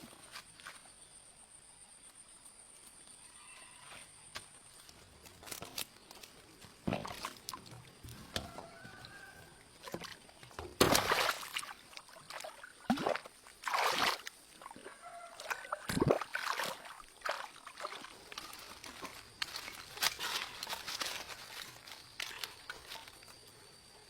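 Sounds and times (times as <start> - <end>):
water splashing and sloshing: 5.4 - 23.3.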